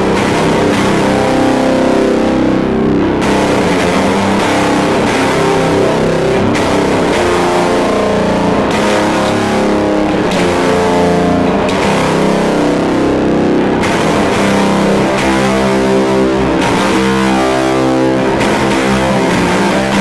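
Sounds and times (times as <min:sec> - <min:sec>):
fuzzed electric guitar chords: 0:00.0 - 0:20.0.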